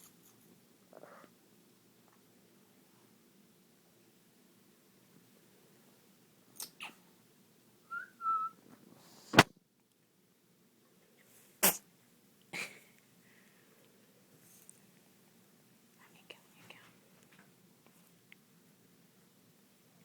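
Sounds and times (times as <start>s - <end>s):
high whistle-like squeak: 7.9s - 8.6s
young pet sneezing: 11.6s - 11.9s.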